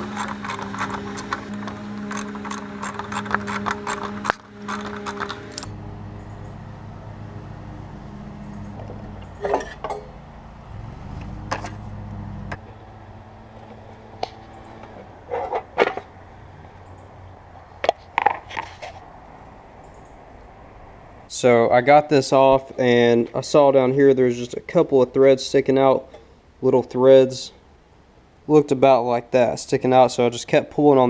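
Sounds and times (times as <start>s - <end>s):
metal tools clinking: 0.0s - 5.7s
steady low hum: 0.0s - 17.5s.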